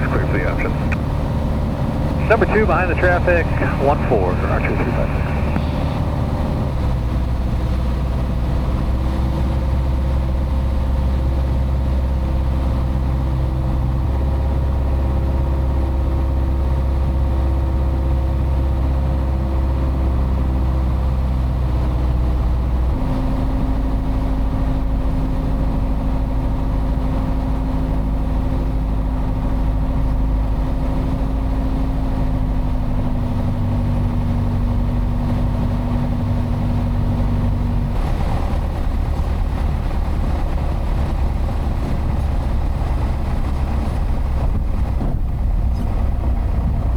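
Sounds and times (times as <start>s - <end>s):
propeller plane engine running: 0.0s - 46.9s.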